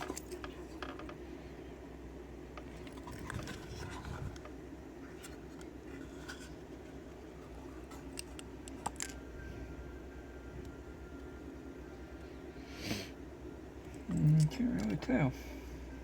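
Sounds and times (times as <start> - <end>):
metallic clicks of lock parts: 7.9 - 9.2.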